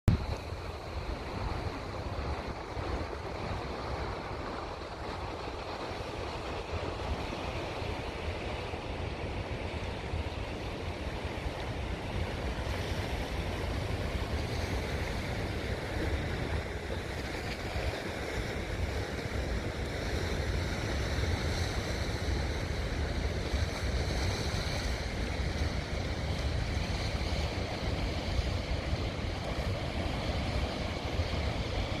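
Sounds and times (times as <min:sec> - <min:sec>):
surf on rocky shore: 0:00.1 - 0:32.0
wind buffeting microphone: 0:00.1 - 0:32.0.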